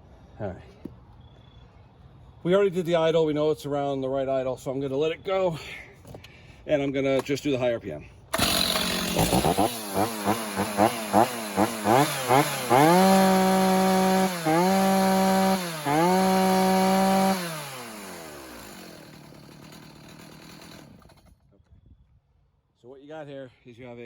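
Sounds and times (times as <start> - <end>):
chainsaw revving: 8.3 - 21.3.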